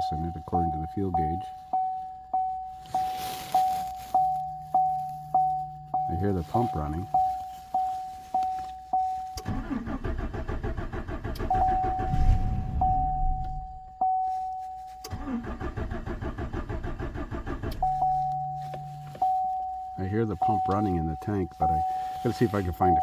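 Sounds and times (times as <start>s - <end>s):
dashboard warning chime: 0.0s - 10.1s, 10.9s - 15.8s, 17.1s - 23.0s
engine cranking on starter: 9.4s - 13.9s, 15.0s - 18.3s.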